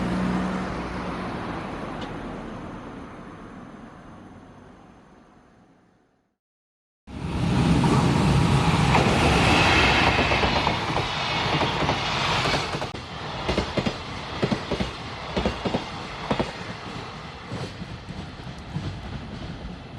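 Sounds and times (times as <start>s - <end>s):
rumble of freight cars: 0.0s - 6.0s, 7.1s - 19.9s
locomotive rushing past: 7.1s - 19.9s.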